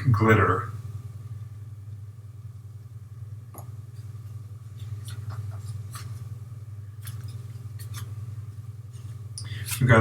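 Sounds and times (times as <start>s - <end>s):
steady low hum: 0.0s - 10.0s
scratchy rustles: 4.7s - 6.4s, 7.0s - 10.0s.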